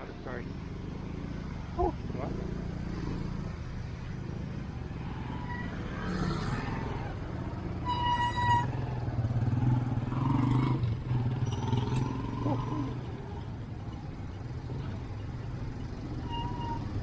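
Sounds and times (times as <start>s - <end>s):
road traffic engines: 0.0s - 17.0s
car horn beep: 7.8s - 8.8s, 16.2s - 16.9s.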